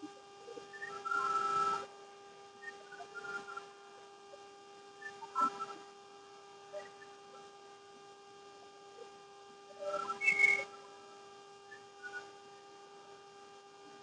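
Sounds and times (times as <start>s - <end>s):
faint steady hum: 0.0s - 14.0s
high whistle-like chirps: 9.8s - 10.7s.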